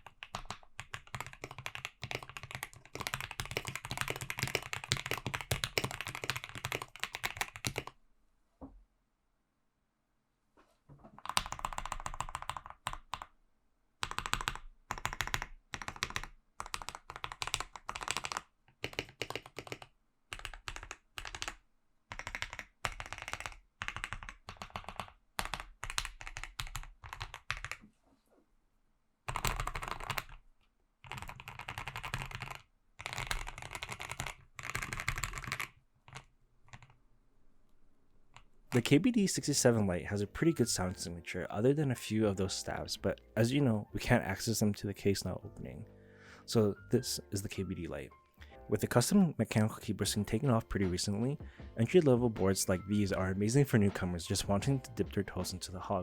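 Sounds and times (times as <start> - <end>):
mechanical keyboard typing: 0.0 - 8.0, 11.2 - 13.3, 14.0 - 27.8, 29.3 - 30.4, 31.0 - 37.0.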